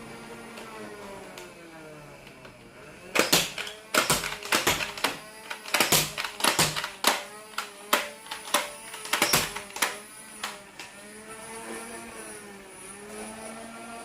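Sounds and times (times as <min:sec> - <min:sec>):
sharp clicks and knocks: 0:03.2 - 0:10.9.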